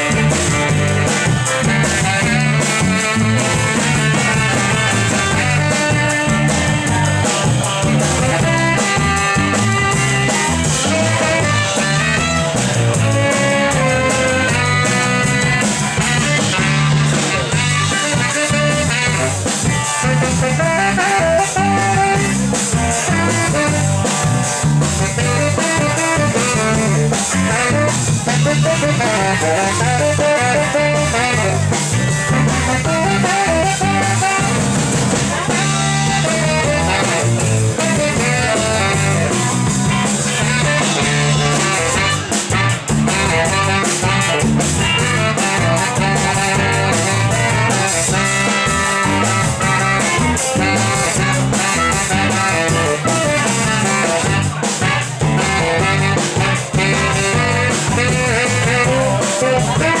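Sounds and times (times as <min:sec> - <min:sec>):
drum kit: 0:00.0 - 1:00.0
electric guitar lead: 0:00.0 - 1:00.0
live band playing: 0:00.0 - 1:00.0.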